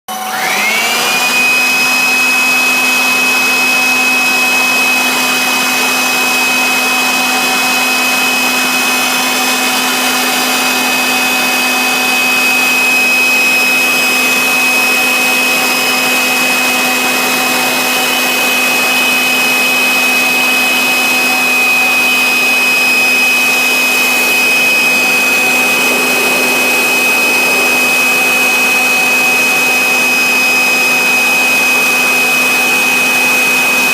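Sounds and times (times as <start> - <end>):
spindle motor whining: 21.5 - 31.8.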